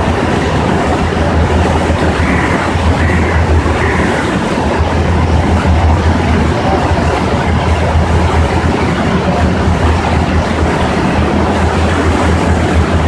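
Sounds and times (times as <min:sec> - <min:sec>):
low engine drone: 0:00.0 - 0:13.0
water rushing: 0:00.0 - 0:13.0
wind noise: 0:00.0 - 0:13.0.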